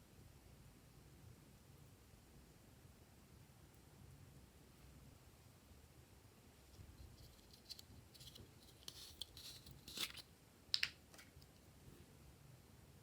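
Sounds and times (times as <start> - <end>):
small objects scraping: 6.7 - 10.3.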